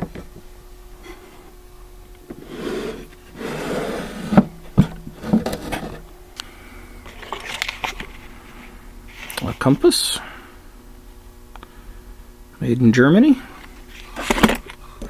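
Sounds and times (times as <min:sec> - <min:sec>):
wooden drawer scraping open: 0:02.3 - 0:06.0.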